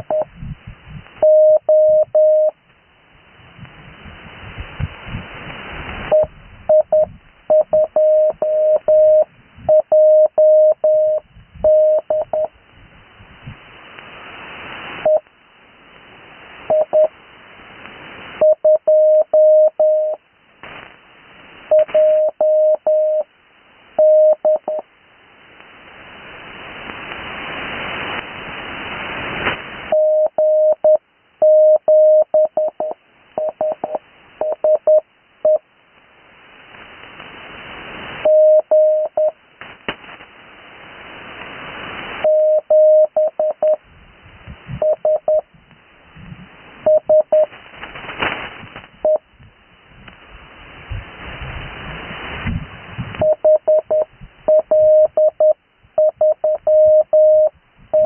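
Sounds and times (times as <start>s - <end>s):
morse code tone: 0.0s - 0.3s, 1.2s - 2.6s, 6.1s - 12.5s, 16.7s - 17.1s, 18.4s - 20.2s, 21.7s - 23.3s, 24.0s - 24.8s, 29.9s - 35.6s, 38.2s - 39.4s, 42.2s - 43.8s, 44.8s - 45.5s, 46.9s - 47.5s, 53.2s - 58.0s
radio band hiss: 0.0s - 1.3s, 1.9s - 29.9s, 32.8s - 54.8s.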